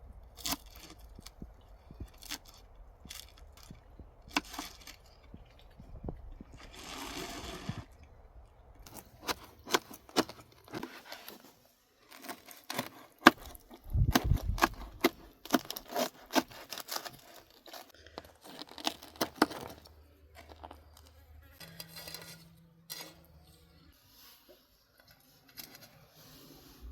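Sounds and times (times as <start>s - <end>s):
rustling tear: 8.9s - 21.1s.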